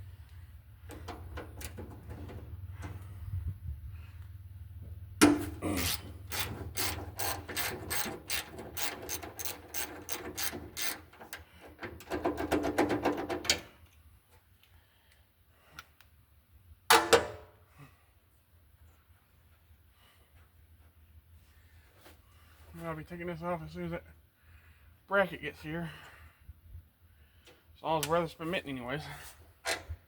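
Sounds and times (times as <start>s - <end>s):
metal clunk: 0.8s - 3.2s, 5.2s - 13.7s, 16.9s - 17.5s
ratchet wrench clicking: 5.5s - 11.4s.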